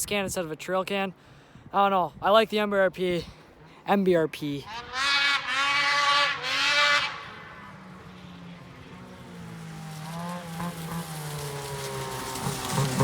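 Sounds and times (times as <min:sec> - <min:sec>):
snowmobile engine running: 0:04.7 - 0:13.0.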